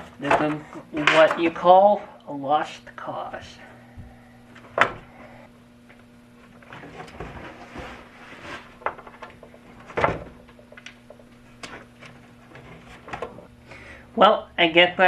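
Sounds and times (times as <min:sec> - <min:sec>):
parts clicking and knocking: 0:08.8 - 0:13.4.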